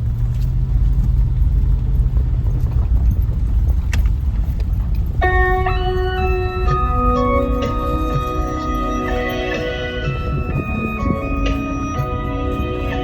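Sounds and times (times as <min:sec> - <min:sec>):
horse hoofbeats galloping: 0:00.0 - 0:13.0
low rumble: 0:00.0 - 0:13.0
organ music: 0:05.2 - 0:13.0.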